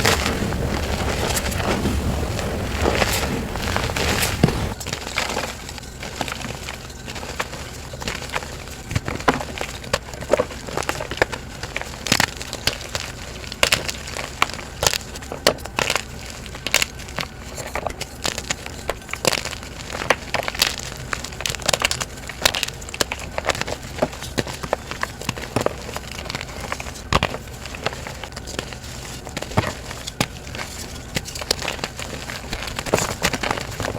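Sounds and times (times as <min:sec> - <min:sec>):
chalk crunching by hand: 0:00.0 - 0:04.8.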